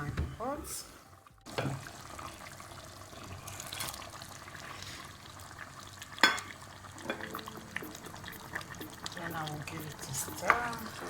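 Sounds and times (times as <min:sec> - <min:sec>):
pot clinking: 0:06.2 - 0:11.0.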